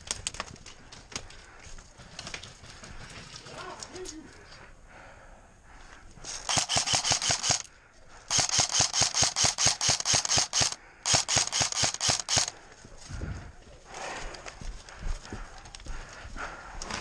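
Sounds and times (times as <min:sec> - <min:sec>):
airsoft gun firing: 0:06.3 - 0:07.7, 0:08.3 - 0:12.5.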